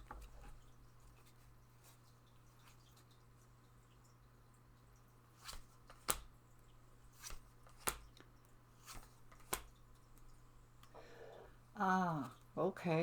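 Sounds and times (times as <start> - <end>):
faint steady hum: 0.0 - 13.0
cards snapping and tapping: 5.4 - 6.4, 7.1 - 11.0.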